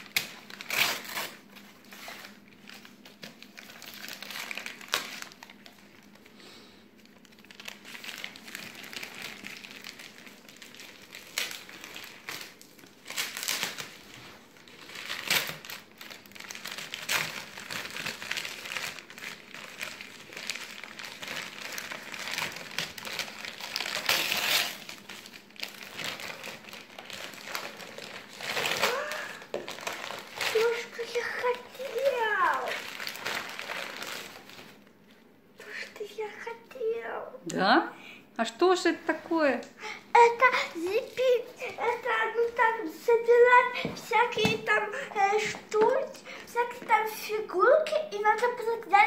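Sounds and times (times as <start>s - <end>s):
wrapping paper crinkling: 0.0s - 37.2s, 40.1s - 49.0s.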